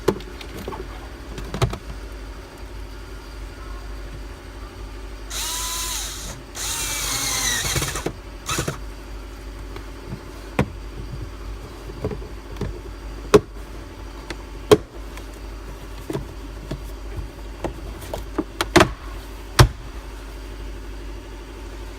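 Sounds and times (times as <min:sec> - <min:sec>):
power drill running: 0:05.3 - 0:08.8.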